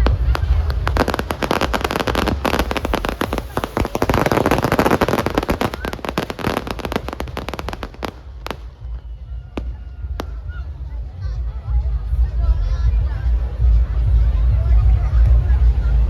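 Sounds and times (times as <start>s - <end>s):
fireworks crackling bangs: 0.0s - 9.0s.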